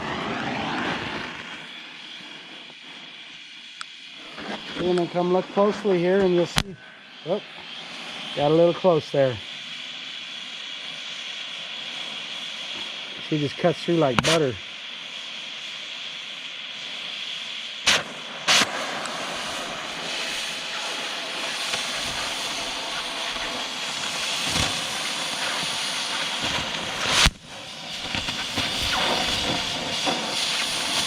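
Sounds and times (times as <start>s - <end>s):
cutting torch hissing: 0.0s - 31.0s
sharp pops: 6.2s - 6.7s, 14.1s - 14.4s, 17.8s - 31.0s.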